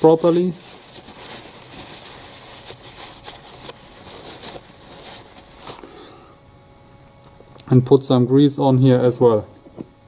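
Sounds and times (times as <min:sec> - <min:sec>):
hands rubbing a bolt: 0:00.6 - 0:05.8.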